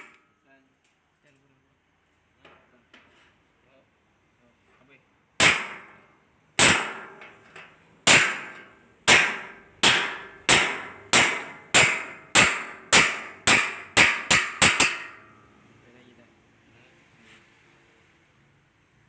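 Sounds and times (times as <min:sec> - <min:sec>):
hammer striking sheet metal: 0:05.4 - 0:15.4.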